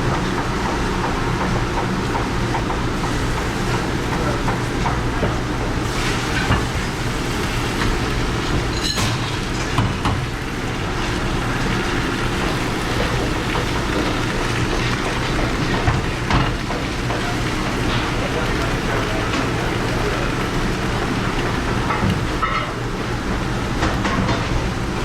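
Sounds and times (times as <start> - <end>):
dishwashing machine noise: 0.0 - 25.0
dishes clinking: 8.6 - 10.2.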